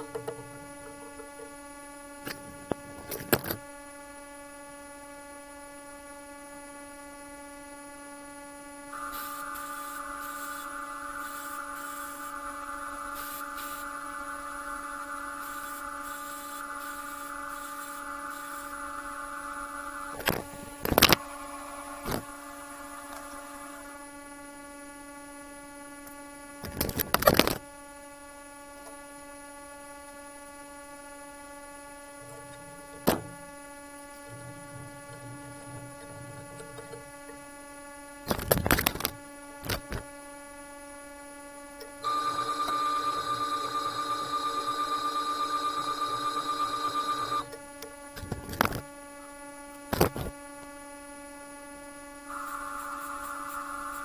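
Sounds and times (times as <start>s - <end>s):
electrical hum: 0.0s - 25.4s, 28.7s - 48.9s, 49.7s - 54.0s
small power tool running: 8.9s - 24.2s, 42.0s - 47.5s, 52.3s - 54.0s.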